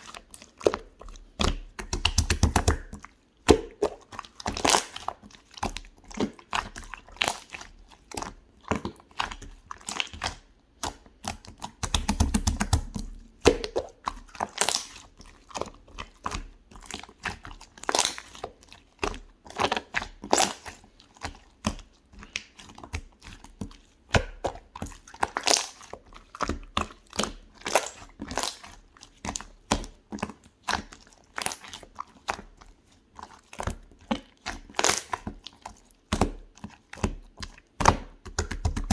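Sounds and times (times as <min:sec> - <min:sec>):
slime sticky clicks and wet pops: 0:01.4 - 0:04.0, 0:09.2 - 0:15.0, 0:34.5 - 0:35.4, 0:37.8 - 0:38.9.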